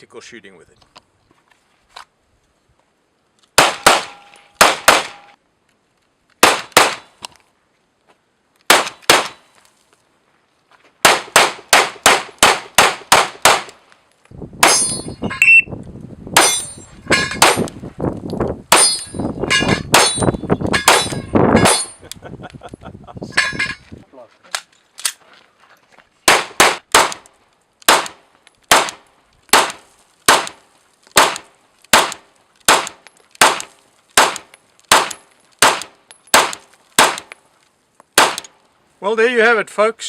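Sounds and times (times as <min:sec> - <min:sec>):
pistol shots: 0:03.6 - 0:05.4, 0:06.4 - 0:07.1, 0:08.7 - 0:09.4, 0:11.0 - 0:13.8, 0:17.3 - 0:17.7, 0:19.9 - 0:21.9, 0:26.3 - 0:27.2, 0:27.8 - 0:30.6, 0:31.2 - 0:37.4, 0:38.2 - 0:38.5
metallic ringing and clanging: 0:04.1 - 0:05.4, 0:14.6 - 0:15.6, 0:16.4 - 0:17.5, 0:18.7 - 0:22.0, 0:23.3 - 0:23.9.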